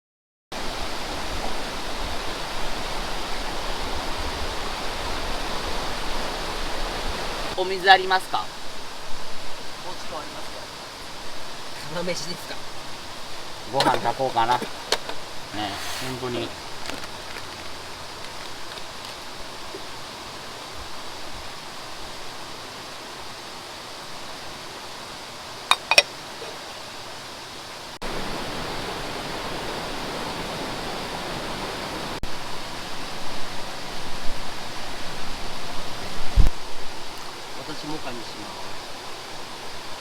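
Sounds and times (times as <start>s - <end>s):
flowing water rushing: 0.6s - 40.0s.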